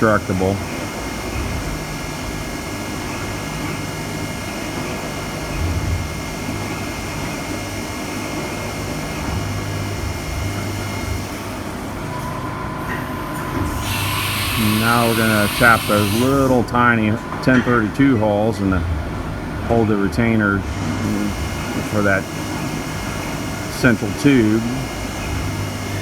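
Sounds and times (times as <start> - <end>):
milling machine humming: 0.0 - 17.4, 18.6 - 26.0
thin high whine: 13.2 - 16.6.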